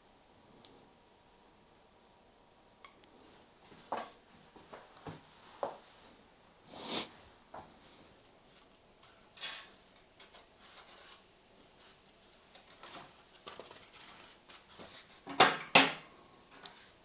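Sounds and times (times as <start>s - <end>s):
faint taps and rustles: 2.9s - 6.0s.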